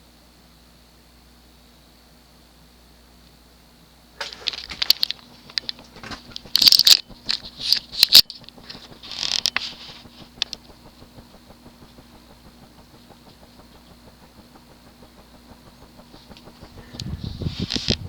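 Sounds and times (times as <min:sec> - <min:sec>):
ceiling fan motor hum: 0:02.6 - 0:18.0
clicking and rattling: 0:04.2 - 0:18.0.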